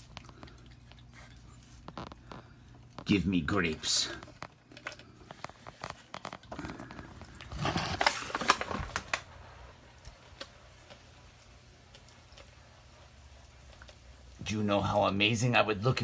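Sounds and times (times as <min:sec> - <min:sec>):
iguana chewing grapes: 0:00.0 - 0:14.5.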